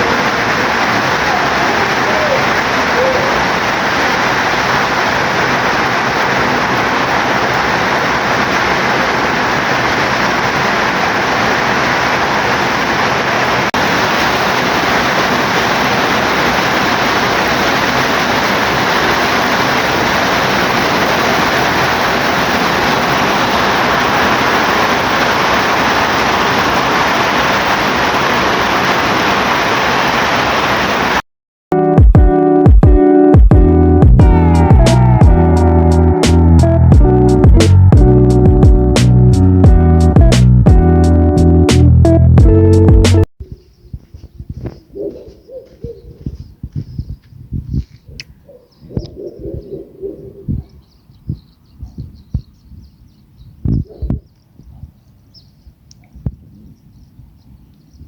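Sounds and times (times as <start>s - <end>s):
heavy rain falling: 0.0s - 31.2s, 34.0s - 43.3s.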